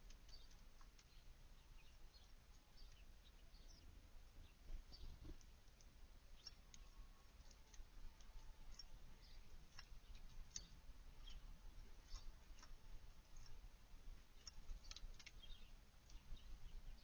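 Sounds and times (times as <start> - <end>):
songbird chips: 4.9 - 11.4, 12.0 - 13.6, 14.2 - 17.0.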